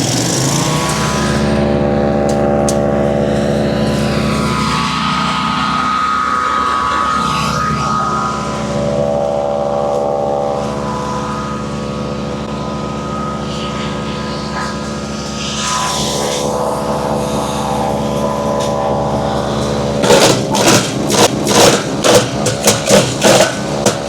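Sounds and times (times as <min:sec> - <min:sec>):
wood chipper engine running: 0:00.0 - 0:24.0
loud repeated knocks: 0:20.0 - 0:24.0.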